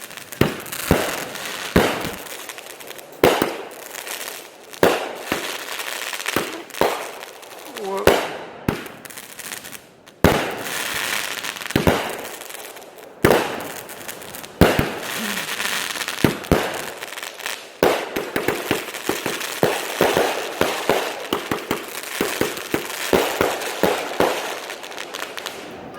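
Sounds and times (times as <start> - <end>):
crackling hiss: 0.0 - 25.9
firework bangs: 0.0 - 25.9
firework pops and crackles: 0.0 - 25.9.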